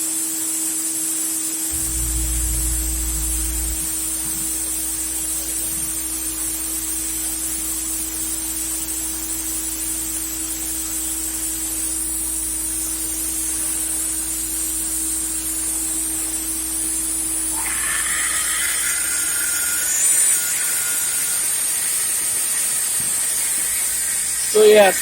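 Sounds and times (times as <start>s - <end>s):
high multi-tone whine: 1.7s - 6.5s, 17.3s - 25.0s
steady hum: 1.7s - 6.5s, 17.4s - 25.0s
router spindle hissing: 17.5s - 25.0s.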